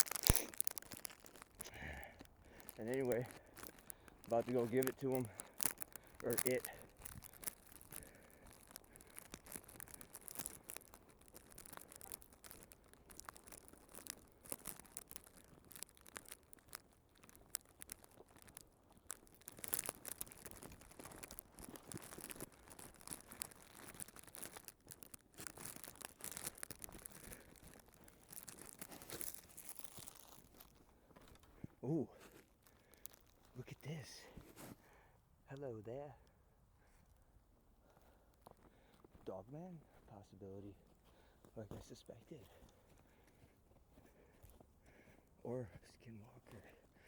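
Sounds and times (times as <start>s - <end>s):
footsteps crunching through snow: 0.0s - 34.9s.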